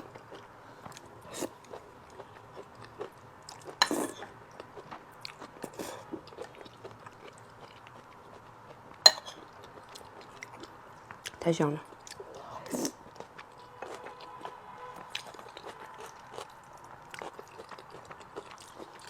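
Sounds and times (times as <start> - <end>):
chewing and biting food: 0.0 - 19.0.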